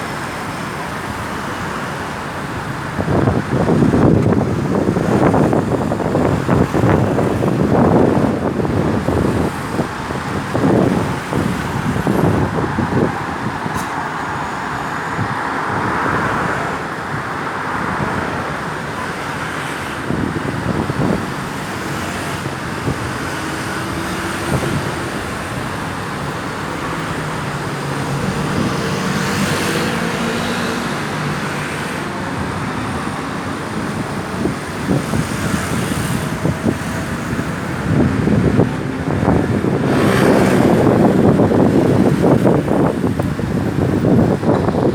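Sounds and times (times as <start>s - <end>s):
road traffic passing: 0.0s - 44.9s.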